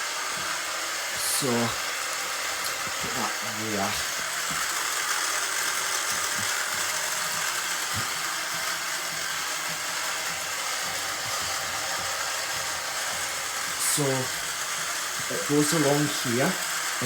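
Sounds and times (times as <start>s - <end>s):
small electric motors whirring: 0.0s - 17.0s.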